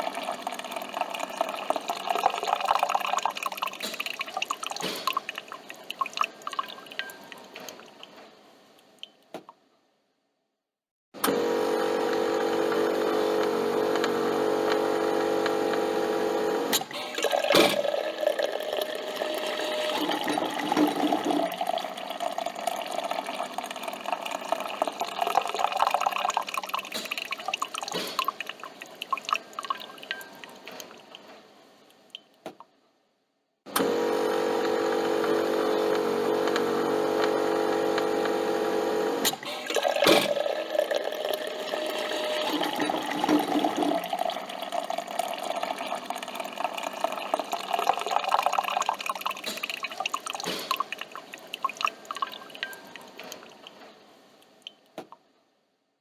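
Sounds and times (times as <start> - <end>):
coffee machine pump humming: 0.0 - 5.2, 11.2 - 30.2, 33.7 - 53.6
coffee gurgling and dripping: 0.0 - 9.3, 11.6 - 31.5, 33.8 - 55.2.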